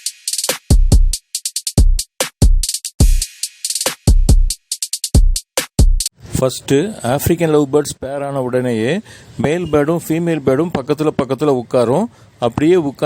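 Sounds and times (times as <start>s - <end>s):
electronic drum-machine beat: 0.0s - 6.1s.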